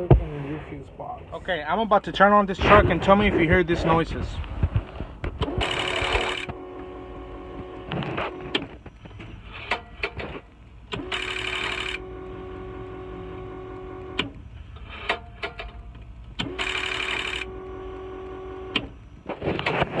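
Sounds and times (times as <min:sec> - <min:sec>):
electric pump motor whining and humming: 0:04.6 - 0:09.4, 0:10.9 - 0:14.4, 0:16.4 - 0:20.0.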